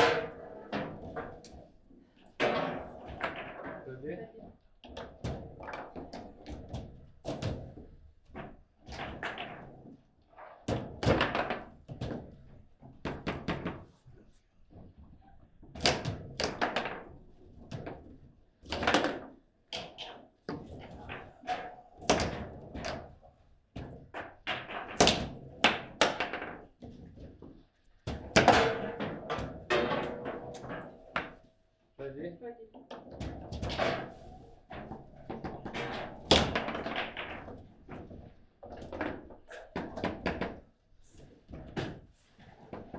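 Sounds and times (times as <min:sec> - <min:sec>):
table football knocks and thuds: 0:13.0 - 0:13.9, 0:15.7 - 0:21.2, 0:23.8 - 0:27.5, 0:28.1 - 0:31.4, 0:34.7 - 0:40.6.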